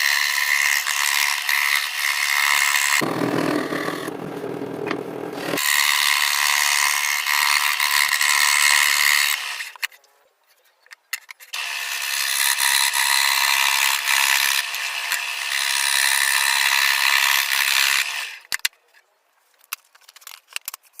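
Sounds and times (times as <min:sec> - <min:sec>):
power tool running: 0:02.7 - 0:05.8.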